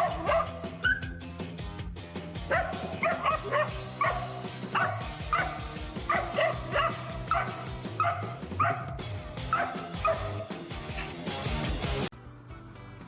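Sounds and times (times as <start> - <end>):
dog barking: 0.0 - 1.1, 2.5 - 10.5
background music: 0.0 - 13.0.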